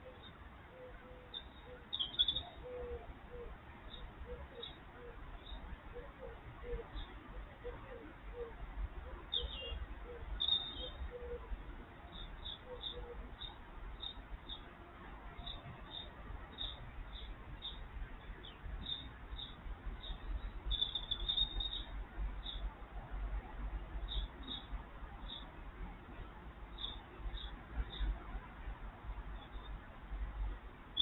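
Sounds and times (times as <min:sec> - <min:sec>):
small birds chirping: 0:01.3 - 0:02.7, 0:09.2 - 0:11.4, 0:12.1 - 0:14.7, 0:15.4 - 0:22.7.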